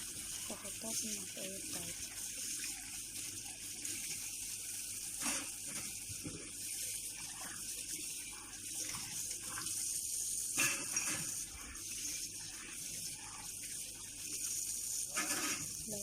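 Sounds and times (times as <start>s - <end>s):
glasses being rinsed: 0.0s - 16.0s
kitchen tap running: 0.0s - 16.0s.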